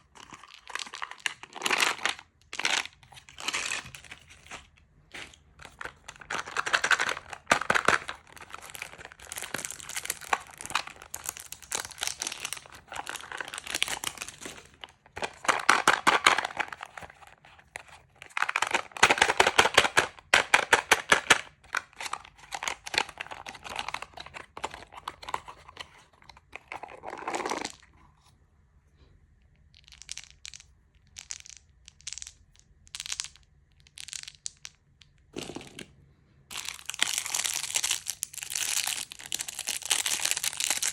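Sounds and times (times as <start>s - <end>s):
candy wrappers crinkling: 0.0s - 27.9s, 36.5s - 40.9s.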